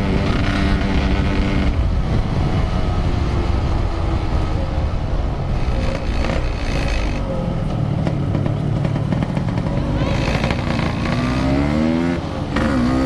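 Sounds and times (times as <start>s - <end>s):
two-stroke motorcycle engine: 5.5s - 13.0s.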